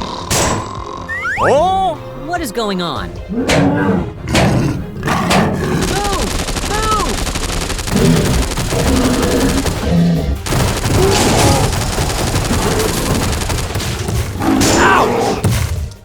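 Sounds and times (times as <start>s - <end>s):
background music: 0.0s - 16.0s.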